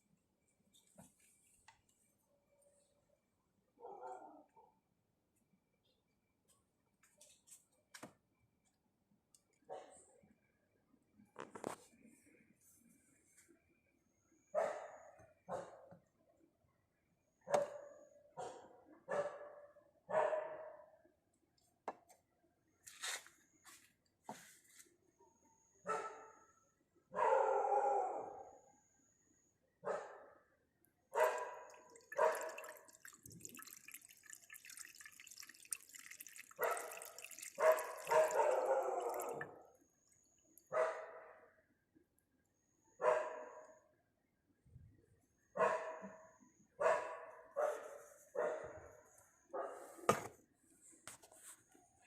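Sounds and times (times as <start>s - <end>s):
dog barking: 3.8s - 4.8s, 9.7s - 10.2s, 14.5s - 15.9s, 17.4s - 21.0s, 25.8s - 28.6s, 29.8s - 30.5s, 31.1s - 32.8s, 36.6s - 39.7s, 40.7s - 41.5s, 42.9s - 43.8s, 45.5s - 50.1s.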